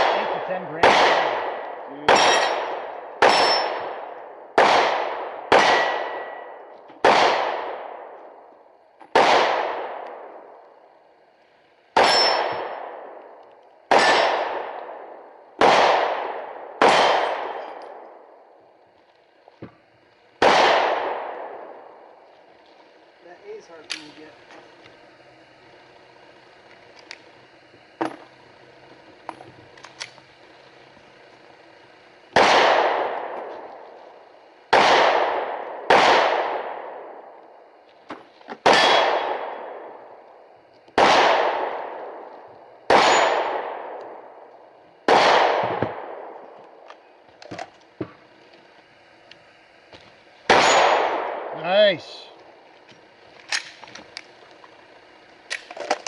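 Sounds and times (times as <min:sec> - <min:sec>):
rifle shots echoing: 0:00.0 - 0:10.8, 0:11.7 - 0:19.5, 0:20.2 - 0:23.2, 0:32.3 - 0:37.8, 0:38.5 - 0:46.9, 0:50.4 - 0:52.6.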